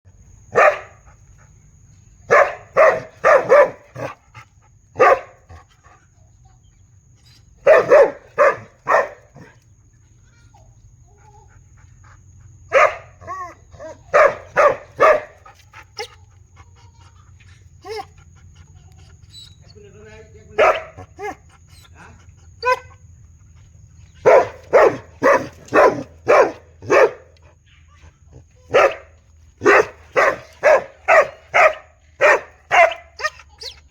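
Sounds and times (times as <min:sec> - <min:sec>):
big dog barking: 0:00.5 - 0:01.1, 0:02.2 - 0:05.7, 0:07.6 - 0:09.6, 0:11.6 - 0:16.1, 0:20.5 - 0:23.1, 0:24.0 - 0:27.6, 0:28.3 - 0:33.8.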